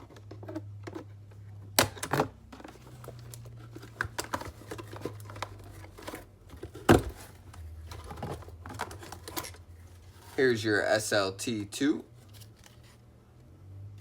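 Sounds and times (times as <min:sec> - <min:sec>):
cardboard rustling: 0:02.4 - 0:10.8.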